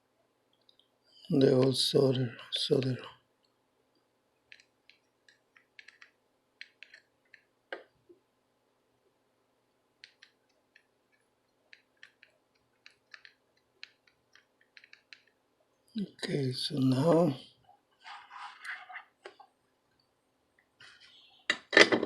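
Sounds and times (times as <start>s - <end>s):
soldering clicks and ticks: 4.5s - 7.9s.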